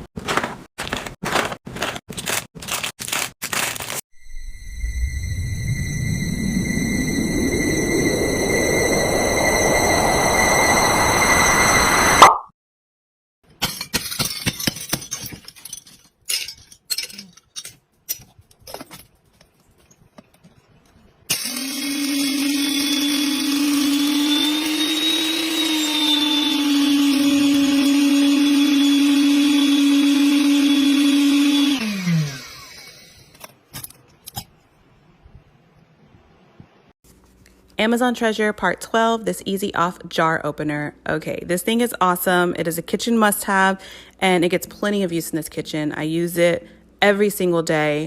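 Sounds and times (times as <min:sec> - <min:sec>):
kitchen appliance motor humming: 0:21.3 - 0:33.4.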